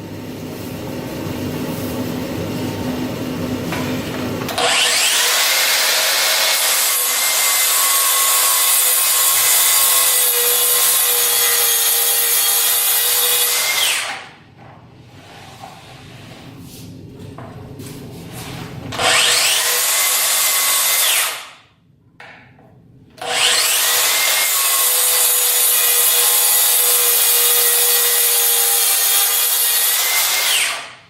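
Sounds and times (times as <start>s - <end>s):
circular saw cutting wood: 4.5s - 14.2s, 18.9s - 21.6s, 23.2s - 31.0s.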